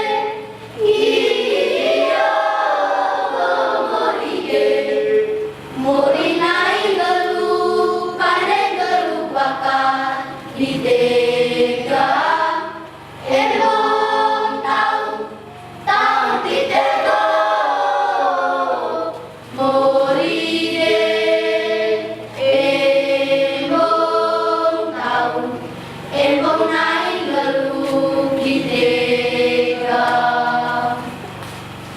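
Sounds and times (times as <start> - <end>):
children's choir singing: 0.0 - 31.8.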